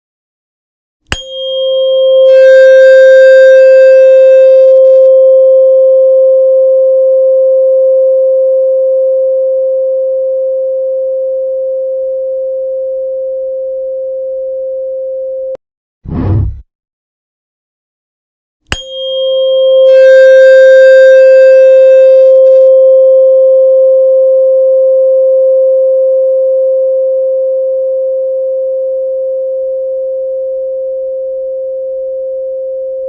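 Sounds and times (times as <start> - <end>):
shimmer of higher ringing tones: 1.1 - 5.1, 18.7 - 22.7
steady pure tone: 1.1 - 5.2, 19.0 - 22.7.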